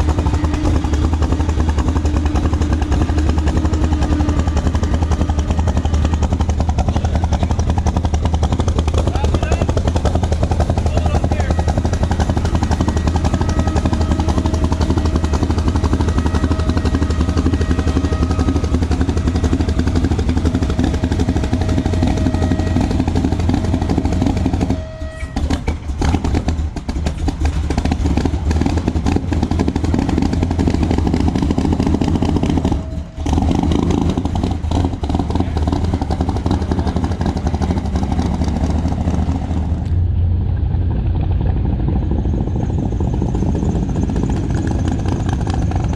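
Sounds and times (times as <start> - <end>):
steady whine: 0.0 - 26.2, 36.4 - 45.9
vehicle engines running: 0.0 - 45.9.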